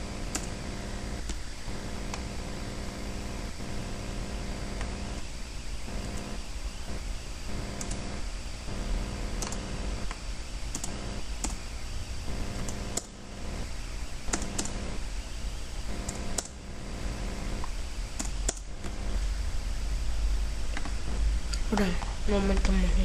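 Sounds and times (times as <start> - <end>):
electrical hum and hiss: 0.0 - 23.0
computer clicks: 0.3 - 0.6, 7.7 - 8.1, 9.4 - 11.6, 14.3 - 14.8, 15.9 - 16.6, 17.6 - 19.0.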